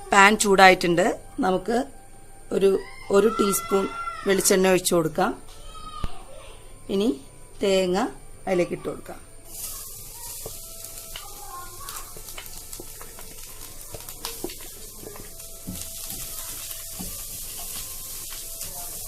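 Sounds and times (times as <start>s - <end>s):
coconut sizzling in a pan: 0.0s - 19.0s
spatula scraping a pan: 9.5s - 19.0s.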